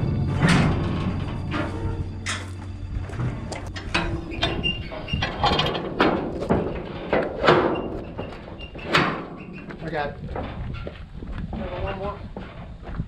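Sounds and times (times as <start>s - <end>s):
faint metal squeaks: 0.0s - 12.8s
metal gate latch clanking: 0.2s - 2.6s, 3.5s - 9.7s.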